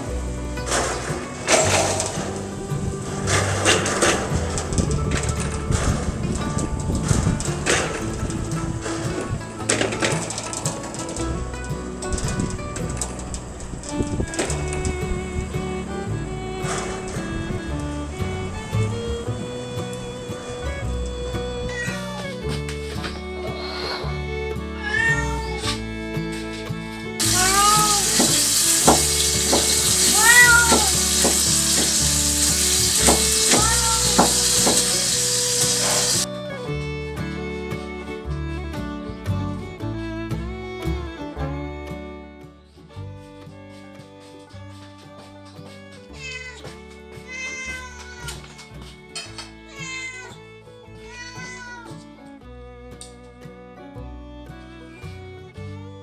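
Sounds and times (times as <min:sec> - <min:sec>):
fiddle and guitar music: 0:00.0 - 0:56.0
cat meowing: 0:24.8 - 0:25.5, 0:27.2 - 0:36.2.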